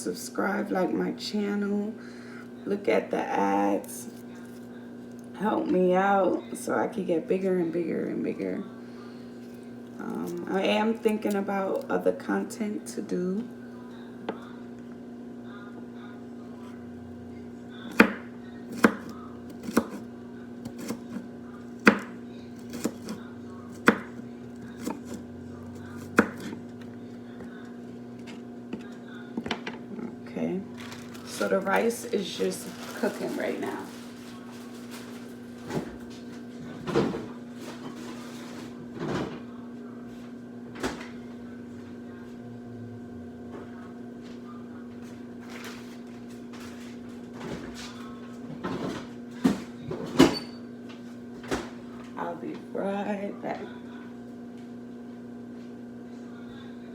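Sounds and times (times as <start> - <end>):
steady low hum: 0.0 - 56.9
knife chopping on cutting board: 17.9 - 20.0, 20.6 - 21.2, 21.8 - 24.2, 24.8 - 25.2, 25.8 - 26.6
kitchen knocks and clunks: 48.5 - 50.6.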